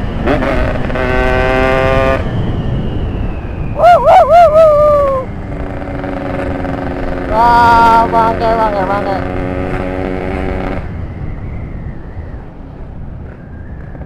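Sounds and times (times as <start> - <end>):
two-stroke motorcycle engine revving: 0.0 - 2.3, 5.3 - 11.0.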